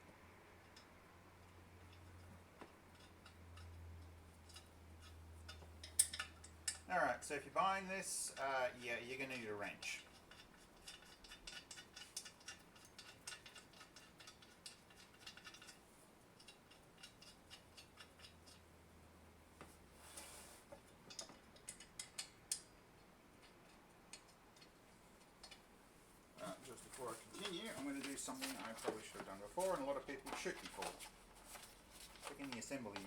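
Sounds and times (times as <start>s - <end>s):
wrench clicking on metal: 4.5s - 6.9s, 10.0s - 15.8s, 16.4s - 18.6s, 21.1s - 22.7s.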